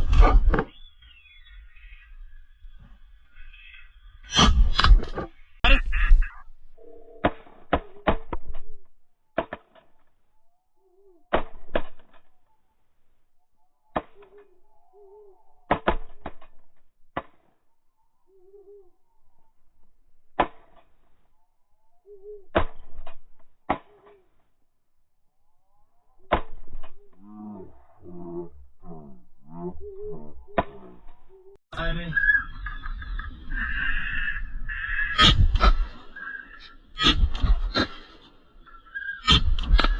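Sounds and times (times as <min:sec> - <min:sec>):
faint short bird calls: 0:18.0 - 0:19.6, 0:21.3 - 0:22.6.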